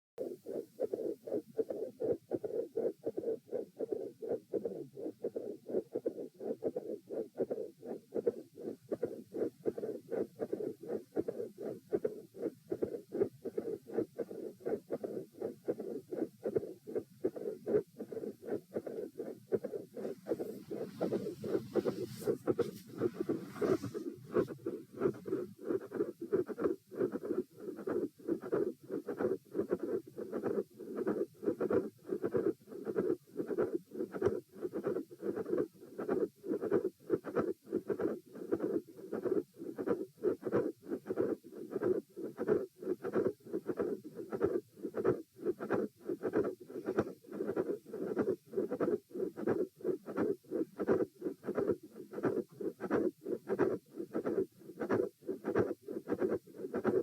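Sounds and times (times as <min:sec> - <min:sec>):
heartbeat through stethoscope: 0:00.2 - 0:57.0.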